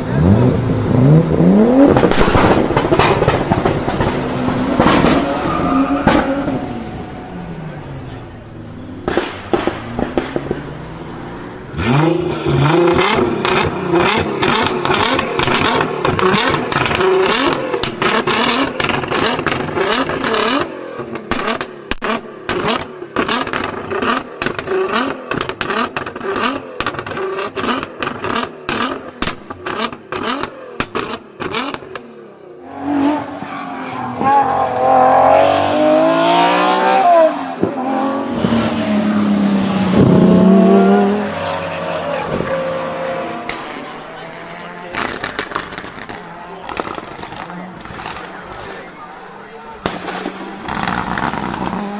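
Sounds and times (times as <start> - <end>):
car engine revving: 0.0 - 51.9
exhaust popping and crackling: 0.3 - 32.2, 43.2 - 51.9.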